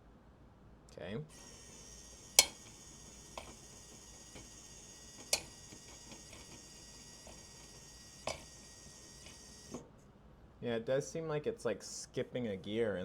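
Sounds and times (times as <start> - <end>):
motor whining: 1.3 - 9.9.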